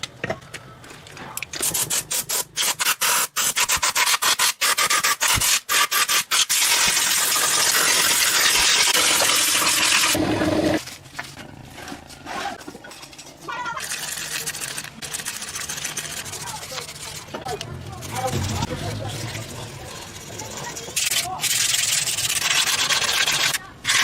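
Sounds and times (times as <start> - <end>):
hand abrasive rubbing strokes: 12.3 - 24.0.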